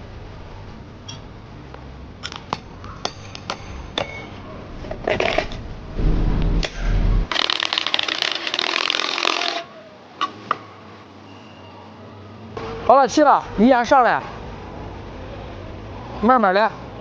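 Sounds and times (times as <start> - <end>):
loud clatter: 5.2 - 8.6
loud low rumble: 5.6 - 7.3.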